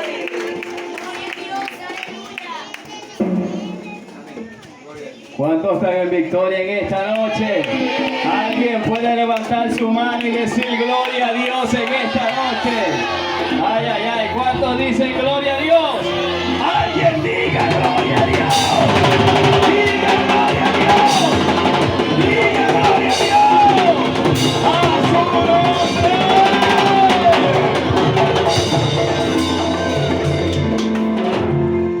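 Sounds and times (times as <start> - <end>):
voices singing: 7.4 - 31.9
drum kit playing: 15.9 - 32.0.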